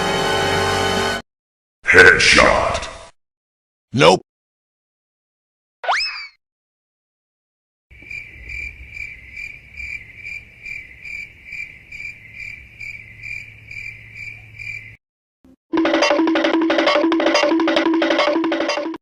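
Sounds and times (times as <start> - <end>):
crickets chirping: 7.9 - 15.0.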